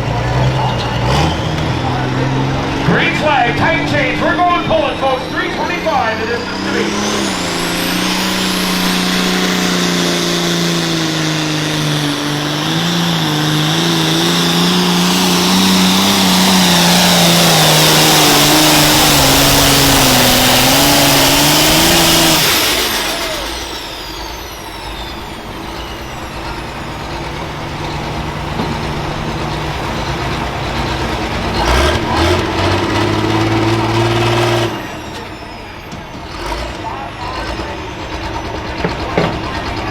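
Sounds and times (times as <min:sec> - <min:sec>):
tractor diesel engine under load: 0:00.0 - 0:39.9
turbo whine: 0:00.0 - 0:39.9.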